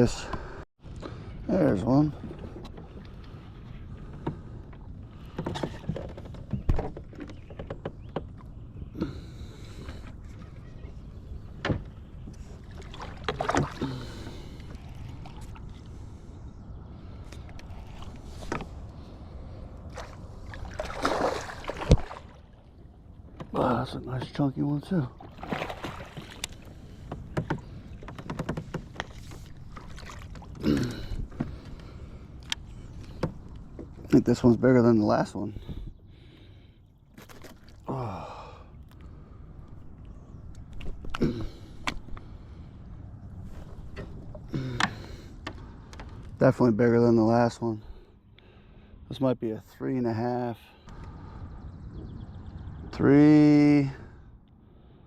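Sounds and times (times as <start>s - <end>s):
clicks and knocks against hull: 4.0s - 8.6s, 25.2s - 34.1s, 41.8s - 42.3s, 43.6s - 46.4s
knocks and bumps on kayak: 27.1s - 30.0s.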